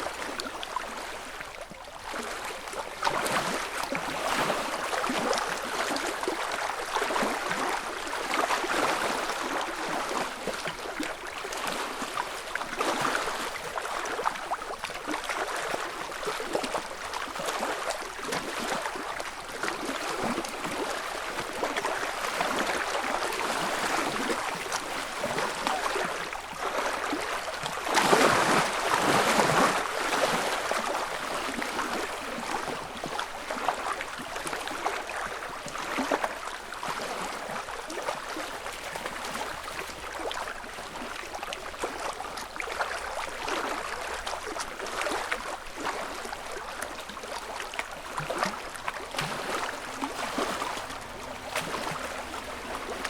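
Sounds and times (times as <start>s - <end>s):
small waves lapping on shore: 0.0s - 53.0s.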